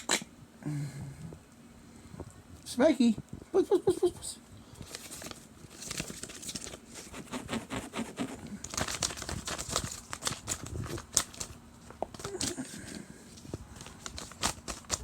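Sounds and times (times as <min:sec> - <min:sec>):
crinkling and rustling: 0:04.8 - 0:15.0.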